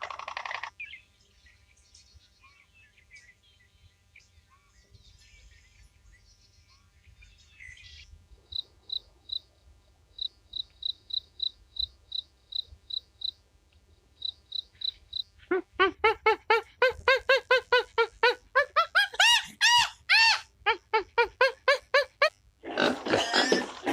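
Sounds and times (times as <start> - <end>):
loud pitched squeaking calls: 15.5 - 22.3.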